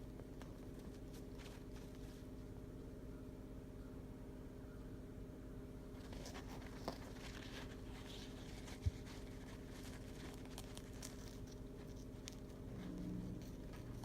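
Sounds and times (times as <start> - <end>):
steady low hum: 0.0 - 14.0
bird beak picking at food: 6.0 - 14.0.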